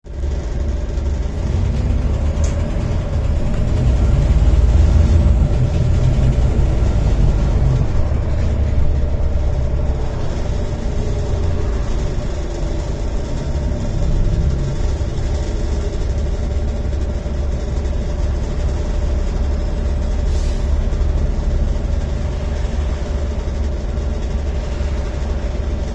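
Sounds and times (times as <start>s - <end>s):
bus diesel engine droning: 0.1s - 25.9s.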